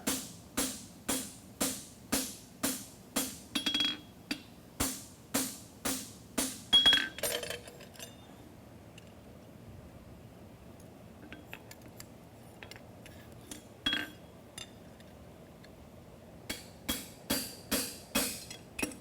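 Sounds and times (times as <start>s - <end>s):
hammer striking horseshoe on anvil: 0.0s - 7.5s, 16.5s - 19.0s.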